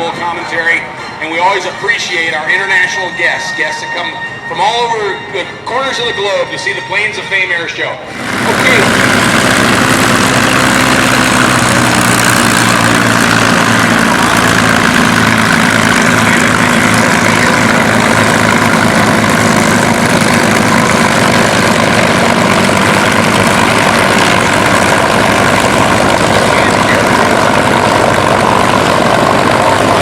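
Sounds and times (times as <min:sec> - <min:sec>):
propeller plane engine idling: 0:08.0 - 0:30.0.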